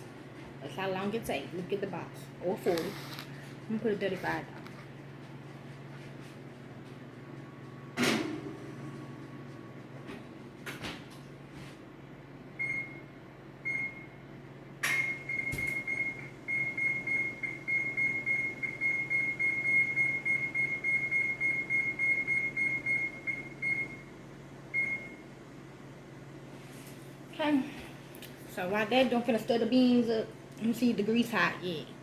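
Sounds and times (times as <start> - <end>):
oven control panel beeping: 12.6 - 14.2, 14.8 - 25.3.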